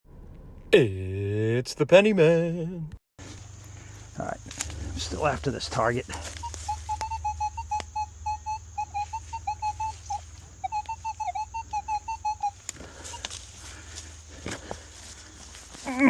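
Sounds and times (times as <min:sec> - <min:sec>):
metal detector beeping: 0:06.1 - 0:13.4.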